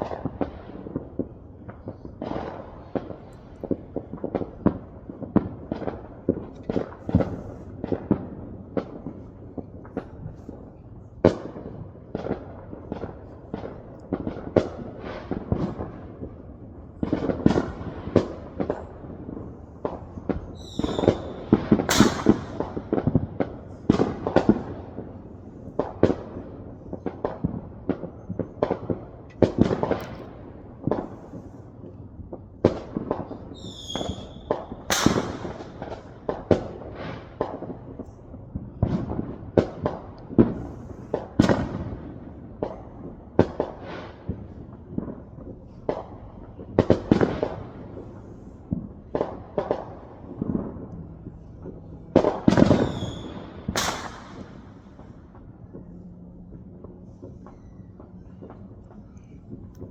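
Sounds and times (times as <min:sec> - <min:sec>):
fireworks bangs and booms: 0:00.0 - 0:59.9
wavering firework whistle: 0:20.5 - 0:22.8, 0:33.4 - 0:36.1, 0:51.4 - 0:59.8.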